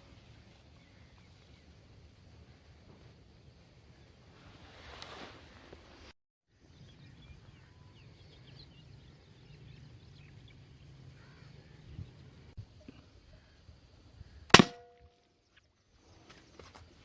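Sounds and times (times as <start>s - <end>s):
small birds chirping: 0.5s - 2.2s, 6.5s - 14.5s.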